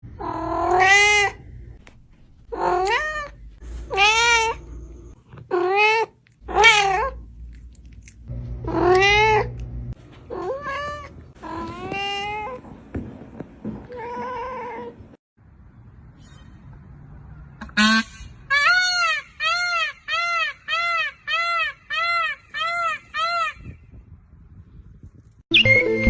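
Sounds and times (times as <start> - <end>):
cat meowing: 0.2 - 1.4, 2.5 - 4.8, 5.4 - 7.2, 8.7 - 9.6.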